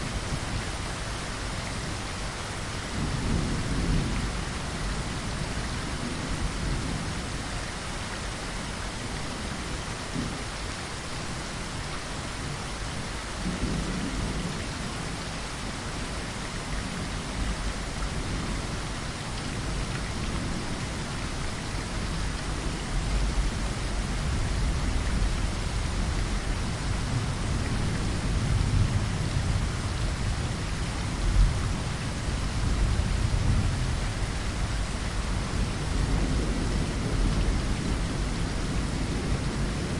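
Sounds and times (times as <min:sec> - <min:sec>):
rain on a window: 0:00.0 - 0:39.9
rolling thunder: 0:24.2 - 0:39.9.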